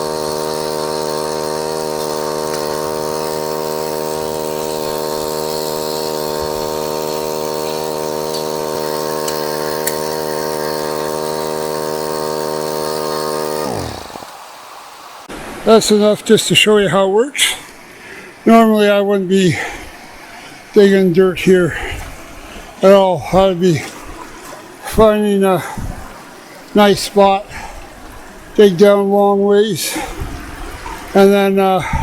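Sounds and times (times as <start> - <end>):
water pump running: 0.0 - 15.9, 29.9 - 32.0.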